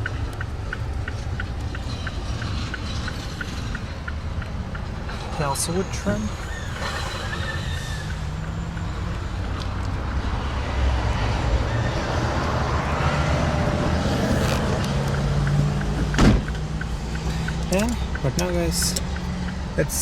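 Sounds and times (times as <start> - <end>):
car engine idling: 0.0 - 9.8, 14.1 - 20.0.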